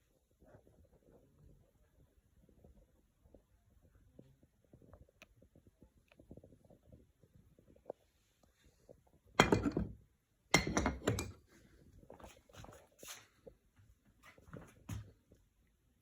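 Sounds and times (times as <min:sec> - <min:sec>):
light knocks and clinks: 0:09.4 - 0:10.0, 0:10.6 - 0:11.4.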